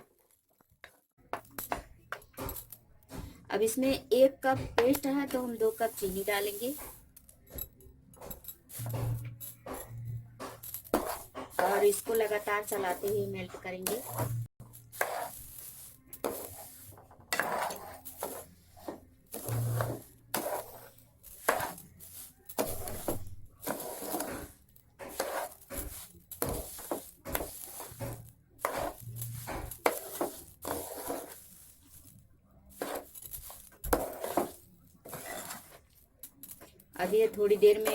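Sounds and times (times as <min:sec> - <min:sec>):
spatula scraping frying pan: 0:10.4 - 0:32.0, 0:32.7 - 0:35.9.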